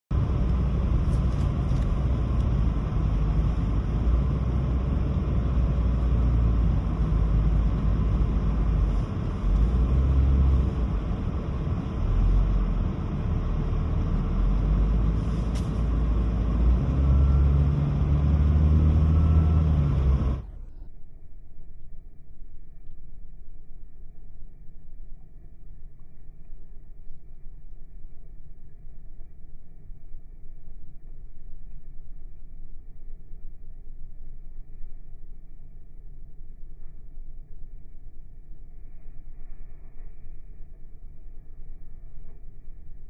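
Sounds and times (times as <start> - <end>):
car engine and tyres rumbling: 0.0 - 21.0.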